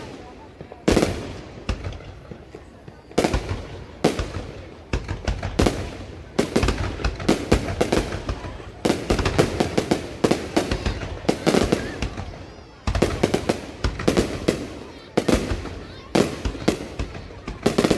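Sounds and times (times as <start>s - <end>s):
fireworks bangs: 0.0s - 17.9s.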